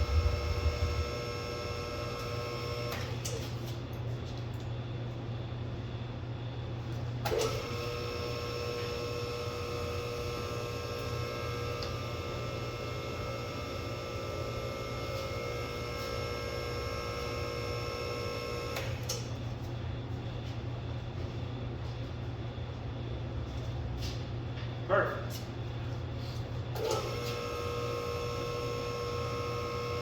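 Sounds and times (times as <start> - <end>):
machine whine: 0.0 - 3.4
constant low hum: 0.0 - 30.0.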